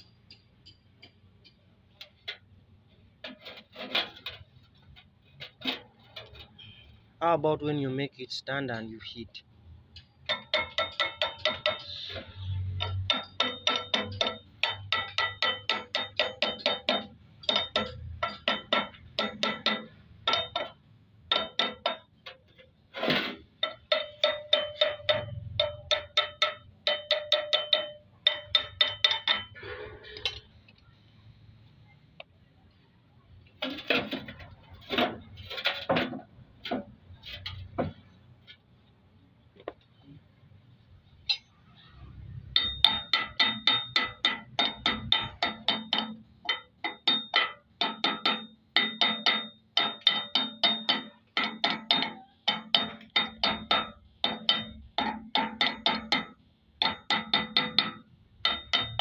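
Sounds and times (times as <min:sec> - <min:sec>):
hammer striking metal: 0:10.0 - 0:30.5, 0:41.2 - 0:59.0.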